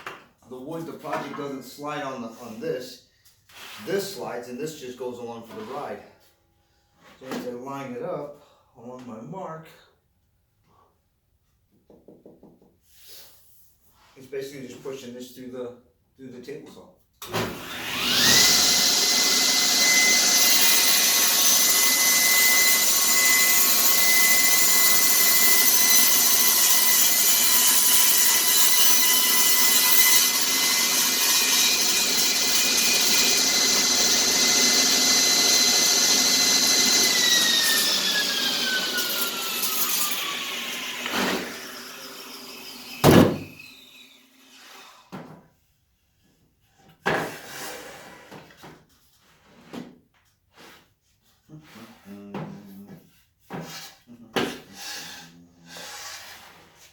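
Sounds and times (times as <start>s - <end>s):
table saw whine: 17.5s - 44.9s.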